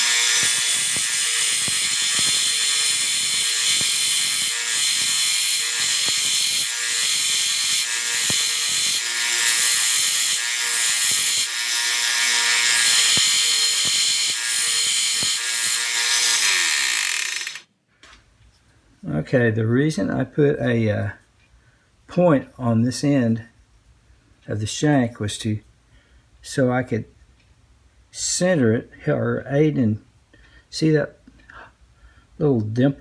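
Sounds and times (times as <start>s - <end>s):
power tool grinding steel: 0.0s - 17.6s.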